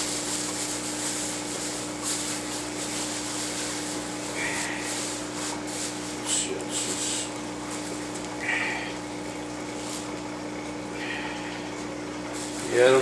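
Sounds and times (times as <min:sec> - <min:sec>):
plastic bags and packing peanuts rustling: 0:00.0 - 0:08.2, 0:12.4 - 0:13.0
steady low hum: 0:00.0 - 0:13.0.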